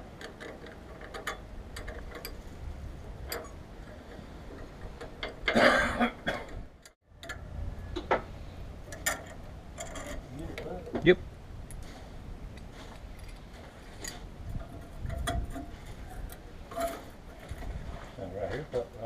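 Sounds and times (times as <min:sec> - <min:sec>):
metal tools clicking and knocking: 0:03.2 - 0:05.6, 0:08.9 - 0:10.7, 0:14.0 - 0:17.1.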